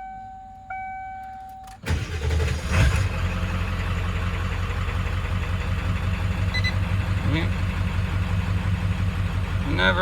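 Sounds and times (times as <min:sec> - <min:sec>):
dashboard chime dinging: 0:00.0 - 0:01.7
diesel engine starting and idling: 0:00.0 - 0:10.0.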